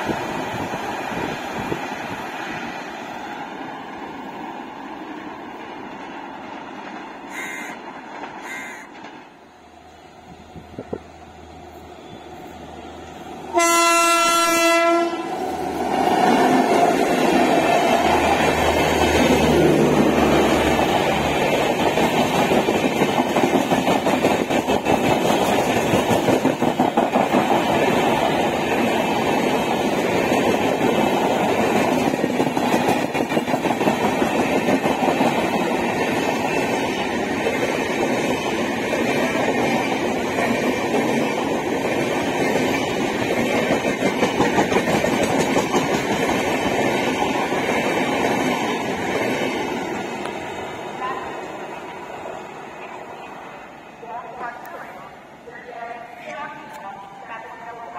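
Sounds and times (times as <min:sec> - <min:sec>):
locomotive horn blast: 0:13.5 - 0:15.3
train wheels clattering over joints: 0:20.8 - 0:50.3.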